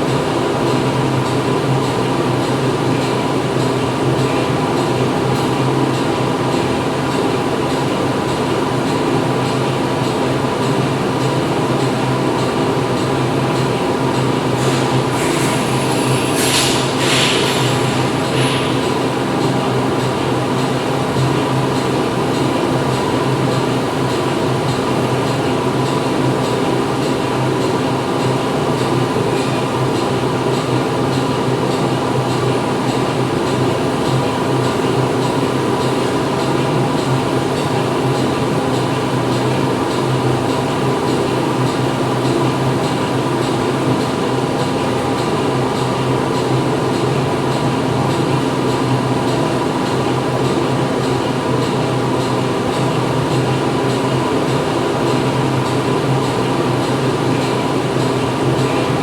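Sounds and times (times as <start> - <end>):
factory machinery drone: 0.0 - 59.0.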